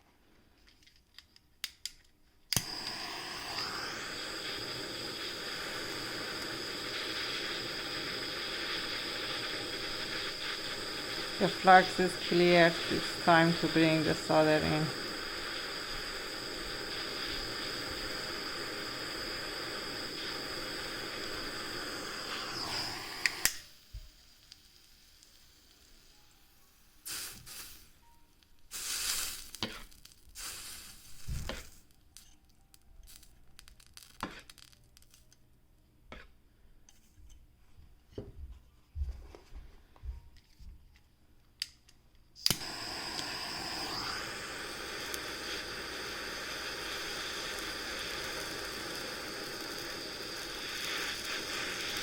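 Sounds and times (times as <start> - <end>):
torch flame hissing: 2.5 - 28.1, 28.7 - 31.9, 42.4 - 52.0.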